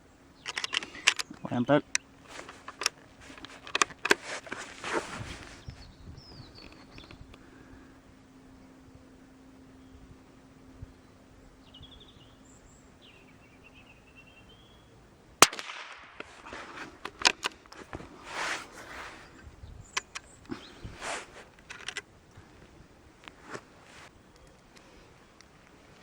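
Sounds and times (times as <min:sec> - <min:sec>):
clicks and rustling: 0:00.4 - 0:05.8, 0:15.4 - 0:26.0
rifle shot: 0:15.4 - 0:16.5.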